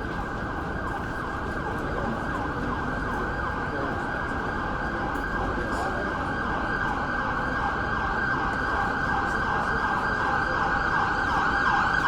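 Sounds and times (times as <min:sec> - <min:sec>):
street traffic hum: 0:00.0 - 0:12.0
siren yelping: 0:06.4 - 0:12.0.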